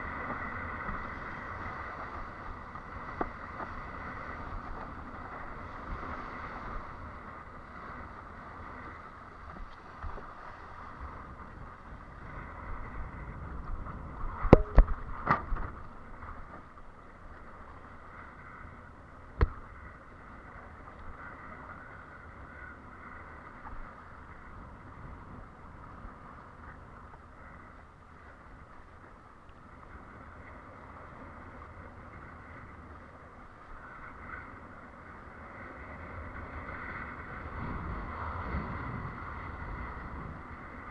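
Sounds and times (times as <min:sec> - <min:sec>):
sharp knocks: 0:14.5 - 0:15.8.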